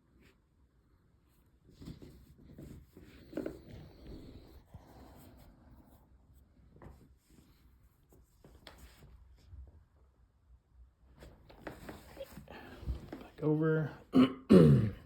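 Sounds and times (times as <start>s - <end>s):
fabric rustling and rubbing: 1.2s - 9.7s, 11.1s - 13.4s.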